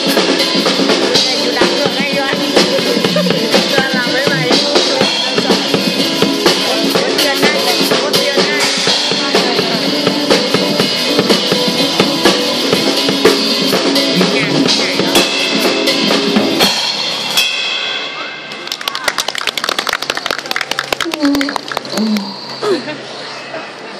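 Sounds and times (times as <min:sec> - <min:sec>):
pop backing track: 0:00.0 - 0:17.3
drum kit playing: 0:00.0 - 0:18.3.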